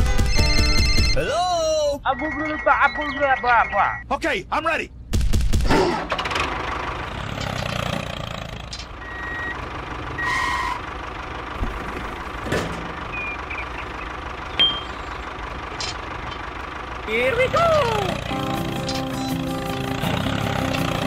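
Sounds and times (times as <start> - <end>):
short high beeps: 14.6 - 15.0.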